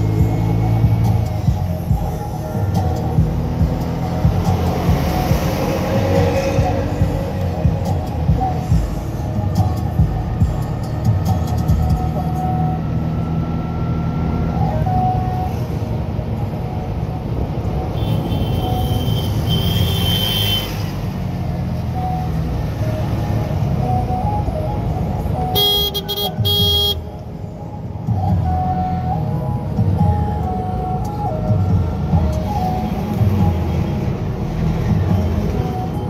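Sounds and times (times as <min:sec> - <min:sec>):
traffic rumble: 0:00.0 - 0:36.0
car horn toots: 0:25.5 - 0:27.1.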